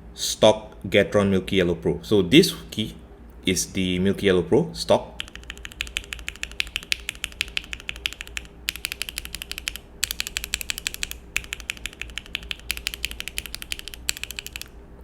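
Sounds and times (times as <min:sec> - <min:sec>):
mechanical keyboard typing: 0:05.2 - 0:14.7.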